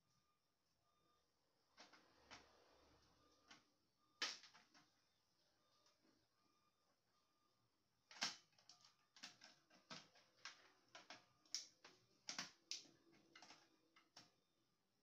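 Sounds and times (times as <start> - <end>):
plastic parts clicking and knocking: 1.8 - 2.5, 3.3 - 5.1, 8.0 - 14.4.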